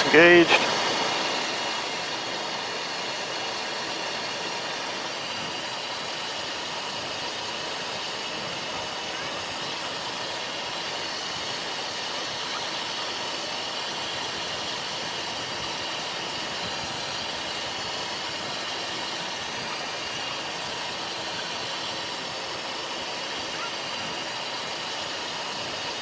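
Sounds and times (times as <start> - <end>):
airflow rushing: 0.0 - 26.0
faint high whine: 0.0 - 26.0
turbofan engine noise: 0.0 - 26.0.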